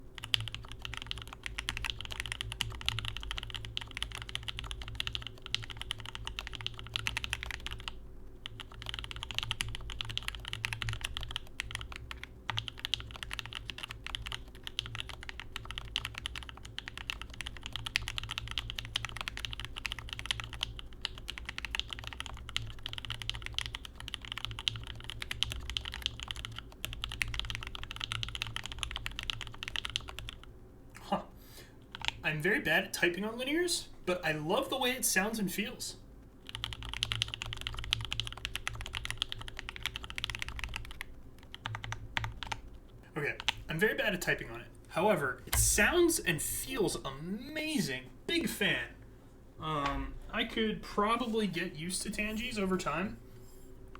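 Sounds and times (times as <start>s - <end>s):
mechanical keyboard typing: 0.2s - 30.5s, 31.9s - 32.2s, 36.4s - 42.7s, 43.4s - 43.7s.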